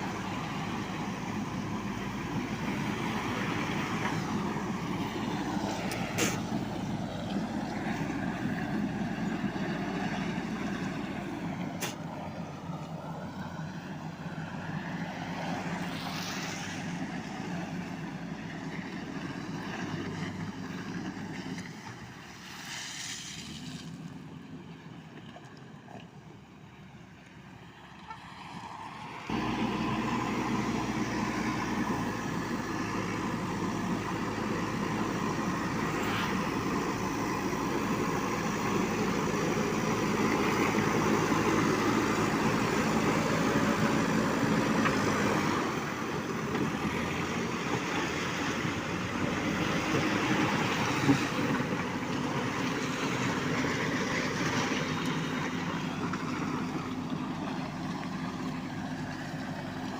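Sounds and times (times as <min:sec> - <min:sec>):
diesel engine running: 0:00.0 - 0:22.2, 0:24.2 - 0:59.9.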